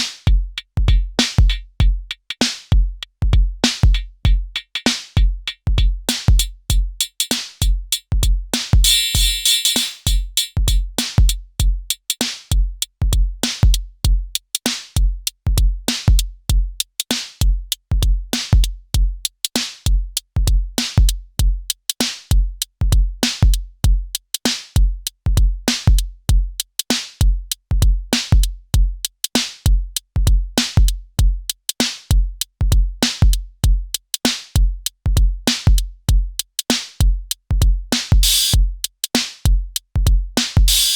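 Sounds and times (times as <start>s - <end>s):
deep booming kick drum: 0.3s - 4.6s, 5.2s - 9.5s, 10.1s - 14.4s, 15.0s - 16.8s, 17.4s - 19.2s, 19.9s - 21.7s, 22.3s - 24.2s, 24.8s - 26.6s, 27.2s - 29.0s, 29.7s - 31.5s, 32.1s - 34.0s, 34.6s - 36.4s, 37.0s - 38.8s, 39.5s - 40.9s
electronic drum pattern: 8.8s - 10.9s, 38.2s - 38.6s.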